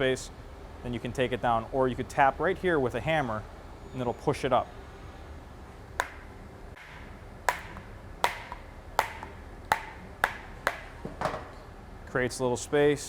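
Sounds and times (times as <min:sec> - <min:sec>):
hammer tapping on metal gear: 0:06.8 - 0:10.9.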